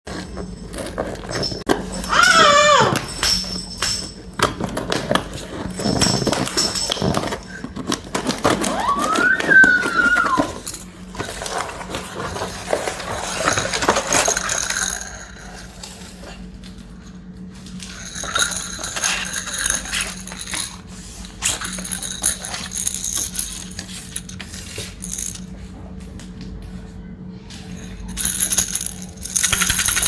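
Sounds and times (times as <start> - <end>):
baby rattle shaking: 9.9 - 15.8, 17.8 - 25.5, 27.8 - 30.0
steady low hum: 10.5 - 30.0.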